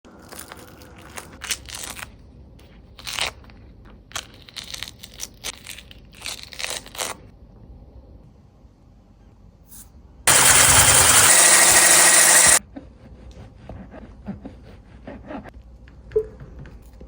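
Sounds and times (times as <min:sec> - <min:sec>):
crunching and crinkling: 0:00.1 - 0:07.3.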